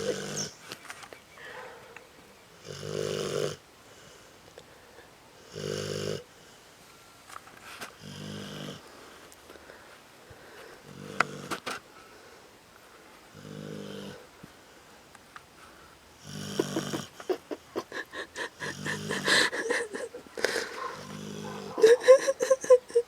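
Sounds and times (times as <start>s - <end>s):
dog snoring: 2.6s - 3.6s, 5.5s - 6.2s, 8.0s - 8.8s, 13.3s - 14.2s, 16.2s - 17.2s, 18.5s - 19.7s, 20.5s - 22.0s.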